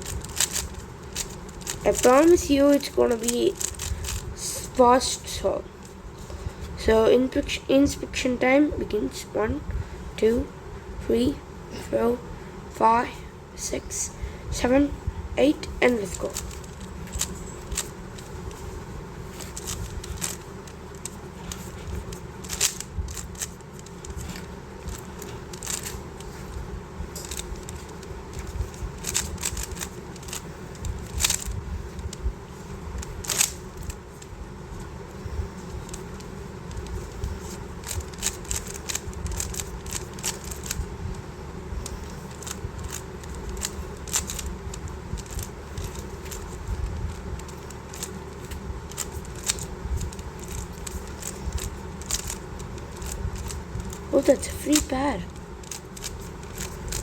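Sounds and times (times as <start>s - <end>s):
cube snapping: 0.0s - 4.7s, 19.4s - 26.6s, 27.2s - 32.2s, 33.0s - 34.3s, 35.5s - 40.8s, 41.8s - 57.0s
speed cube clicking: 0.0s - 6.0s, 13.9s - 34.4s, 35.0s - 57.0s
steady low hum: 0.0s - 57.0s.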